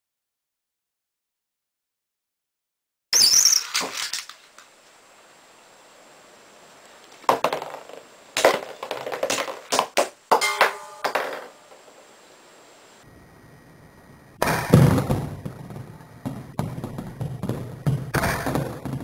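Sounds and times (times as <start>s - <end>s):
metal tops clashing: 9.2s - 11.9s.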